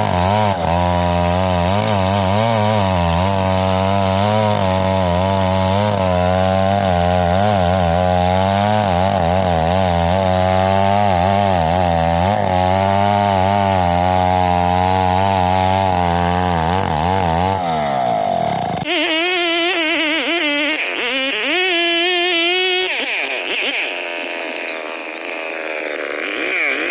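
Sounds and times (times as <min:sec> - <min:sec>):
chainsaw cutting wood: 0:00.0 - 0:26.9.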